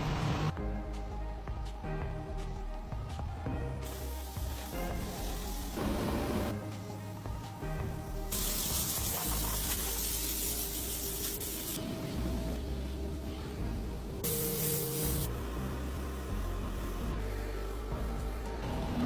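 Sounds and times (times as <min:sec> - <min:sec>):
background music with low bass: 0:00.0 - 0:19.0
hissing spray: 0:03.8 - 0:06.5, 0:08.1 - 0:18.4.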